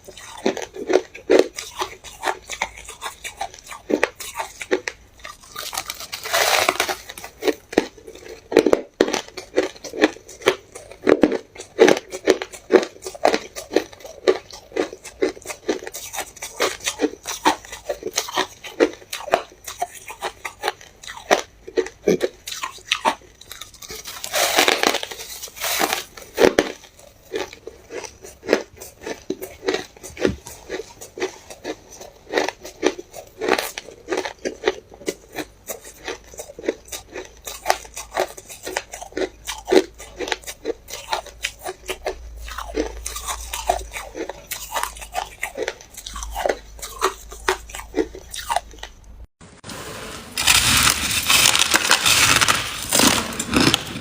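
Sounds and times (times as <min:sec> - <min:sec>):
person chewing ice cubes: 0:00.0 - 0:54.0
long grinding crunches: 0:04.0 - 0:19.0, 0:23.5 - 0:40.4, 0:49.6 - 0:54.0.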